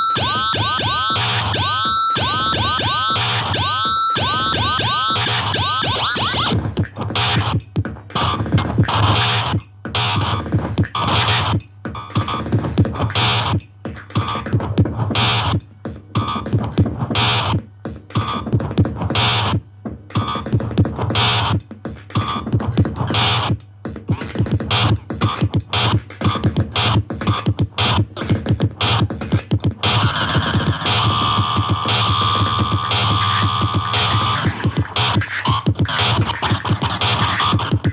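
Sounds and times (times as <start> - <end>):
stuttering synthesizer noise bursts: 0.0 - 13.6, 20.2 - 37.9.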